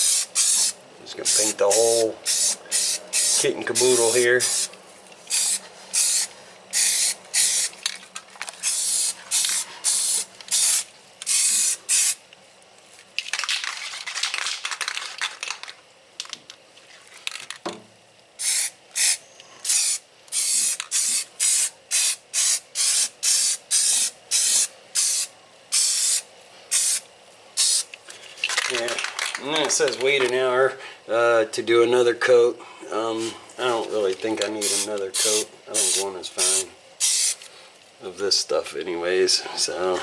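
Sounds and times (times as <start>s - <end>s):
aerosol spray can hissing: 0.0s - 4.7s, 5.3s - 7.8s, 8.6s - 12.2s, 18.4s - 27.0s, 27.6s - 27.9s, 34.6s - 37.5s.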